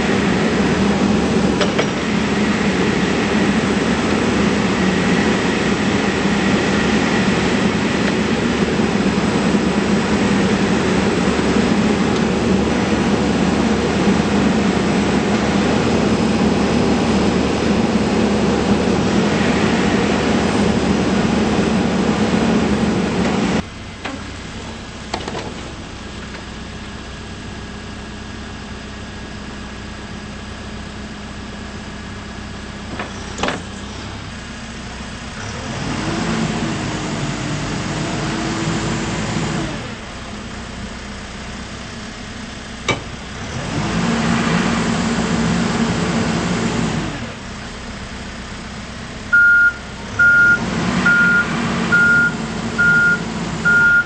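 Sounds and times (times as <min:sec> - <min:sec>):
diesel engine running: 0:00.0 - 0:54.0
reversing alarm beeping: 0:49.3 - 0:54.0.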